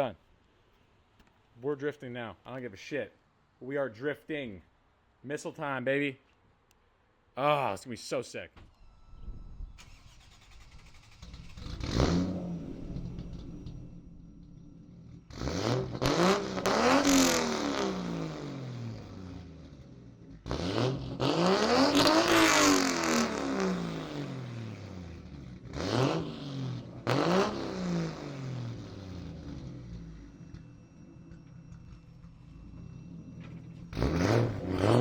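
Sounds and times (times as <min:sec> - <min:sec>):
car engine revving: 0:09.8 - 0:35.0.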